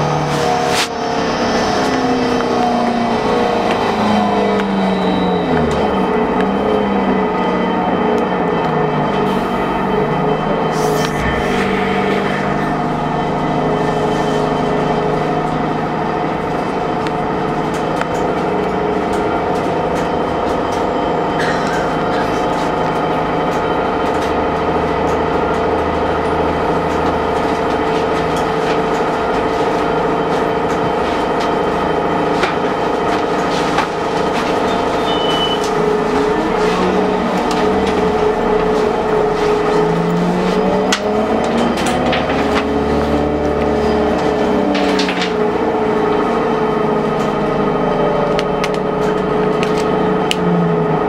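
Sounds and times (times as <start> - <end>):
whining tones: 0.0 - 21.4
bus engine drone: 0.0 - 51.0.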